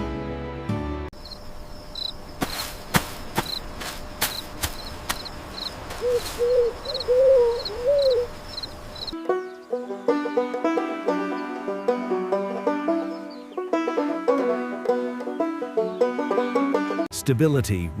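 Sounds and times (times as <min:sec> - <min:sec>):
music: 0:00.0 - 0:01.1, 0:09.2 - 0:18.0
crickets chirping: 0:01.2 - 0:09.2
wavering call: 0:06.0 - 0:08.7.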